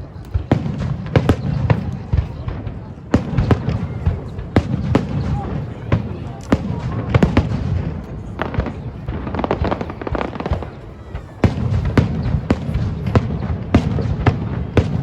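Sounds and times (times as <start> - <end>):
fireworks sharp bangs: 0.0 - 15.0.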